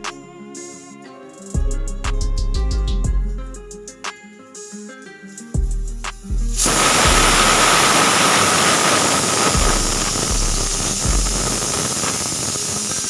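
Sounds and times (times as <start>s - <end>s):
low bass background music: 0.0s - 0.6s, 1.6s - 4.0s, 5.6s - 7.8s, 9.6s - 11.8s
pressure cooker hissing steam: 6.6s - 13.0s.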